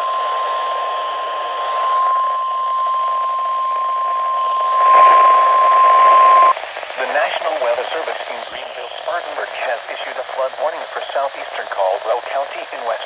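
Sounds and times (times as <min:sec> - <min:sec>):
high steady alarm beep: 0:00.0 - 0:06.5
radio static: 0:00.0 - 0:13.0.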